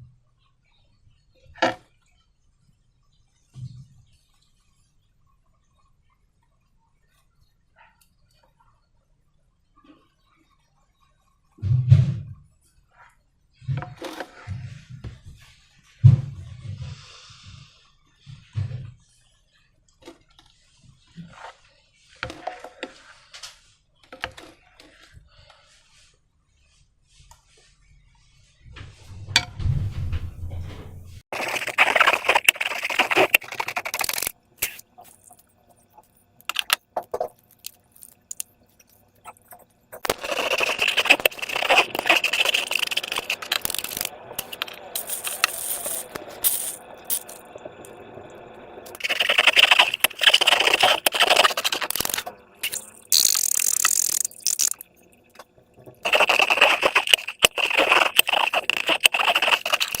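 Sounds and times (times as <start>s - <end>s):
slime crackling and clicking: 48.9s - 55.4s, 56.0s - 60.0s.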